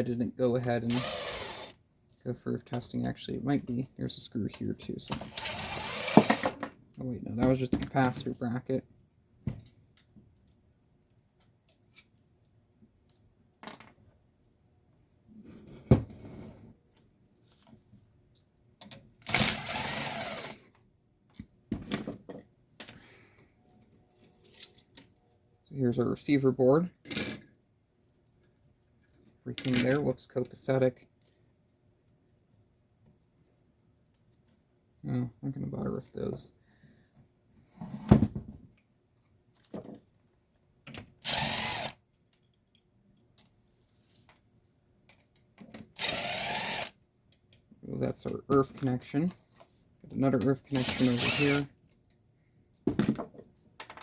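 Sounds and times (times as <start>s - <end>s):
cordless drill whirring: 0.9s - 1.8s, 5.3s - 6.4s, 19.3s - 20.6s, 41.2s - 42.0s, 46.0s - 47.0s, 50.8s - 51.6s
power driver whirring: 0.9s - 1.8s, 41.2s - 41.9s, 46.0s - 46.9s
clicks and clatter of parts: 20.4s - 25.2s, 28.4s - 30.1s, 40.8s - 46.2s, 46.8s - 54.0s.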